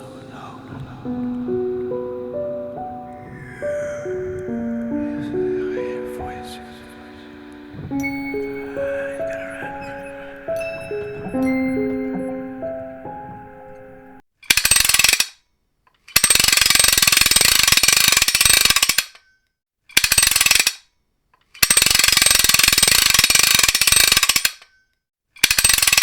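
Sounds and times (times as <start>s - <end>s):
ratchet-like mechanical clicking: 14.4s - 15.4s, 16.0s - 19.2s, 19.9s - 20.8s, 21.6s - 24.7s, 25.4s - 26.0s.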